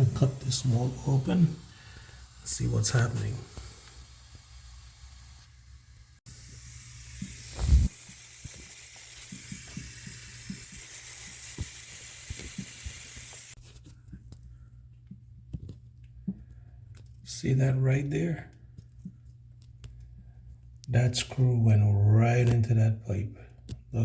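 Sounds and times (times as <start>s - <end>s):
water hissing from pipe: 0.0s - 13.6s.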